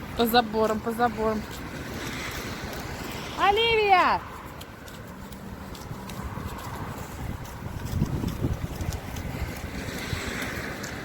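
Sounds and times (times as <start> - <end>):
wind buffeting microphone: 0.0 - 11.0
faint ticks: 4.4 - 11.0.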